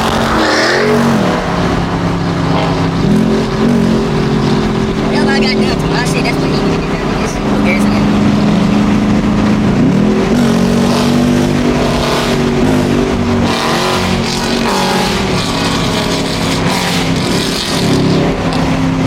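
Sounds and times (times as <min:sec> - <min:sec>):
car engine running: 0:00.0 - 0:19.0.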